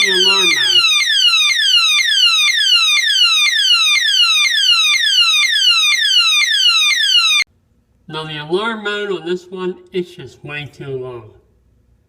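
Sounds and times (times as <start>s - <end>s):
electronic alarm siren: 0.0s - 7.5s.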